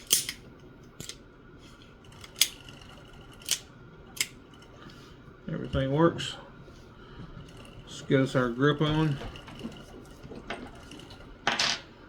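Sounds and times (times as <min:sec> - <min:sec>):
revolver metallic clicks: 0:00.0 - 0:00.4.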